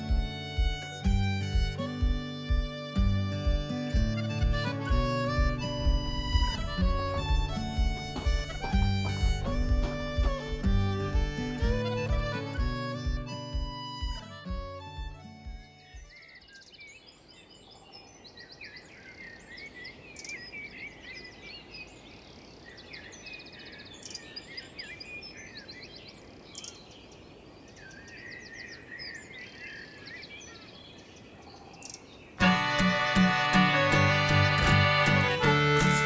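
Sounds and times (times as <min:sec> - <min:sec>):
music: 0:00.0 - 0:16.1, 0:32.4 - 0:36.0
folk music with accordion: 0:00.0 - 0:16.2, 0:32.4 - 0:36.0
faint background hiss: 0:00.0 - 0:36.0
small birds singing and chirping: 0:15.8 - 0:32.9.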